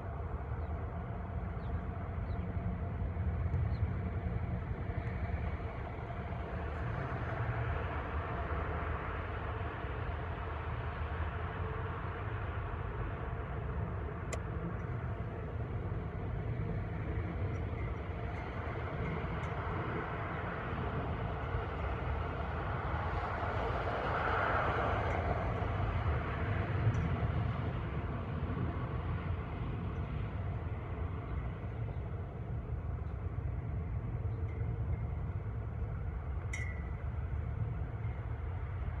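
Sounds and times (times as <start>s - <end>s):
low traffic rumble: 0.0s - 39.0s.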